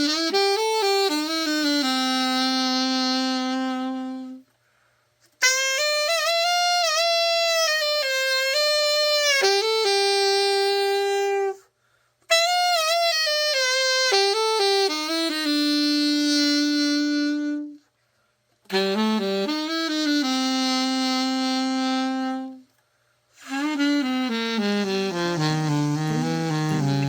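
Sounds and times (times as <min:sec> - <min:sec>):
saxophone slow melody: 0:00.0 - 0:04.5, 0:05.4 - 0:11.7, 0:12.3 - 0:17.9, 0:18.6 - 0:27.0.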